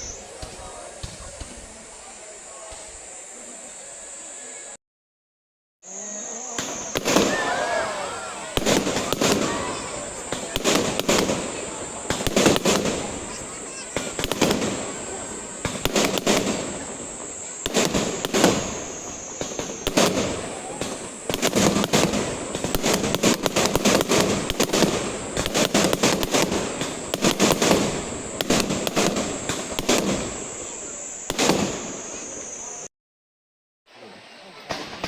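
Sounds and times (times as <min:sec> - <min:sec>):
fireworks bangs and crackling: 0:00.0 - 0:03.1, 0:06.3 - 0:32.9, 0:34.6 - 0:35.0.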